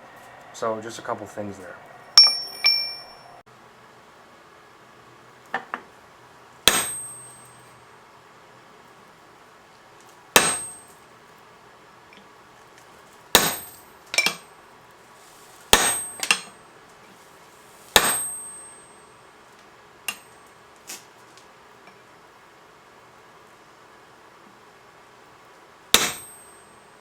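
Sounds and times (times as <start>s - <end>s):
hammer striking metal punch: 2.2s - 3.2s, 6.7s - 7.4s, 10.4s - 10.8s, 13.4s - 14.4s, 15.7s - 16.5s, 18.0s - 18.8s, 26.0s - 26.7s.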